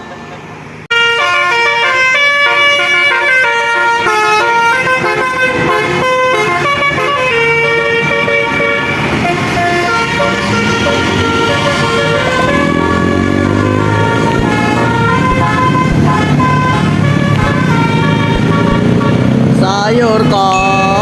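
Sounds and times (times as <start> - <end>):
multi-tone bus horn playing tune: 0.9 - 19.6
rising sound: 20.5 - 21.0.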